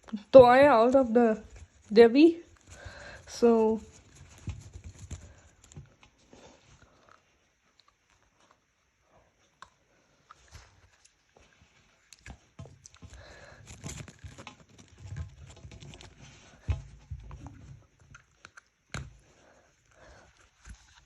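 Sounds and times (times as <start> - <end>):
plastic packaging rustling: 12.0 - 18.5.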